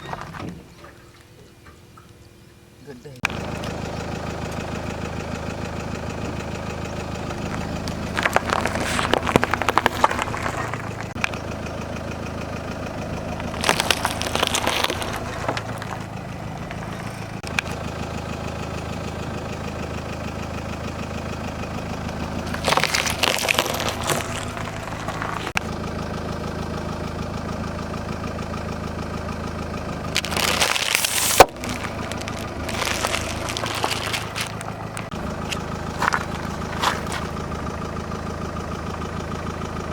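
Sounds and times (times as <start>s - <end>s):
car engine idling: 0.0s - 39.9s
tyre crushing objects: 7.4s - 11.2s, 13.4s - 16.1s, 22.4s - 25.6s, 30.1s - 37.4s.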